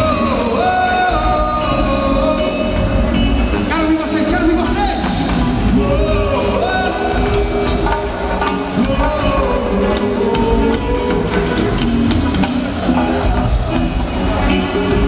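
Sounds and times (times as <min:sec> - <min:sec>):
people singing: 0:00.0 - 0:03.3, 0:05.6 - 0:12.0
live band playing: 0:00.0 - 0:15.0.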